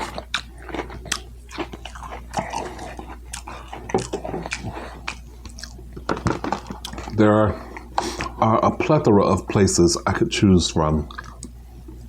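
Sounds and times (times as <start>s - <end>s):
person chewing food: 0.0s - 8.5s, 11.0s - 12.0s.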